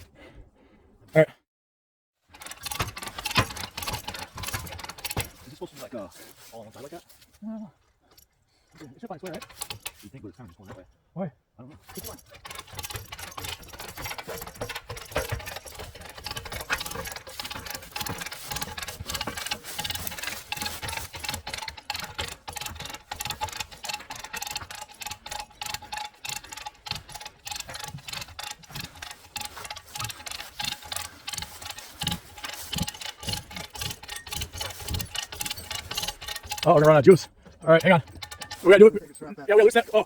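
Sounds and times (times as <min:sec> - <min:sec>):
ratchet winch clicking: 0:02.3 - 0:07.3, 0:08.1 - 0:11.0, 0:11.8 - 0:40.0.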